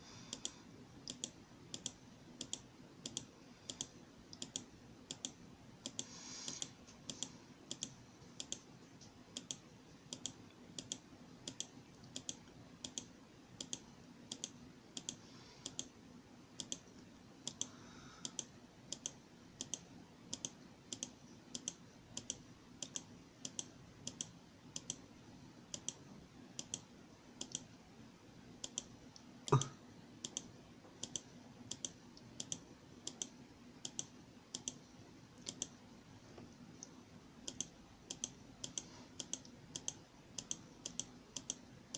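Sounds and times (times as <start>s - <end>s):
steady clicks: 0.3s - 15.9s, 16.6s - 25.1s, 25.7s - 27.7s, 28.6s - 41.9s.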